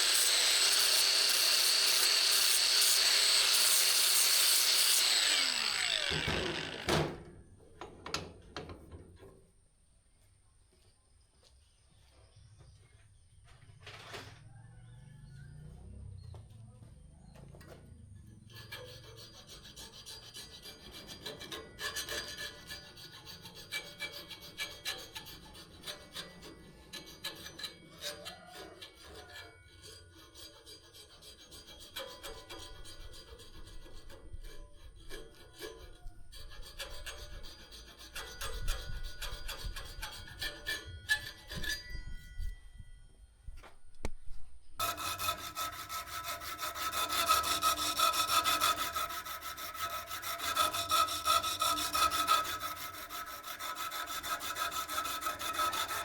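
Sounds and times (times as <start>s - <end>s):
file rasping on metal: 0.0s - 6.9s, 18.2s - 42.0s, 44.8s - 56.0s.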